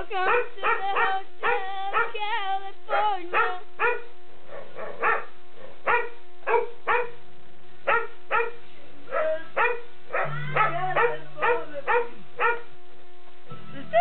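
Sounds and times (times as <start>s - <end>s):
dog barking: 0.2s - 2.2s, 2.9s - 7.2s, 7.9s - 12.7s
song playing: 10.2s - 11.7s, 13.1s - 14.0s.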